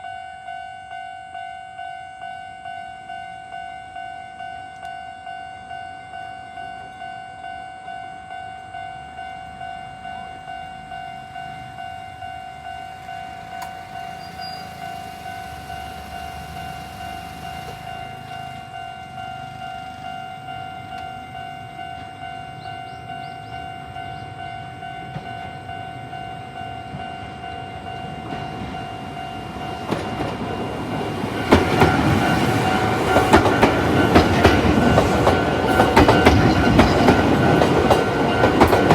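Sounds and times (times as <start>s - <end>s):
level-crossing alarm ringing: 0.0s - 38.9s
train wheels clacking over rail joints: 13.0s - 18.6s, 29.4s - 38.9s.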